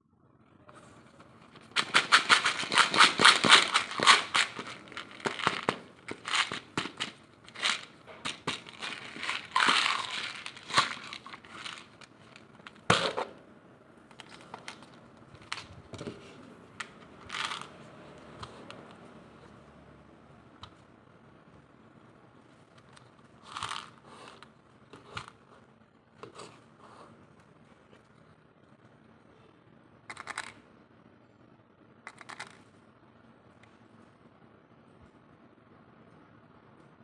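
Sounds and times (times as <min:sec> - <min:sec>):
wrapper crinkling and tearing: 0:01.6 - 0:12.9.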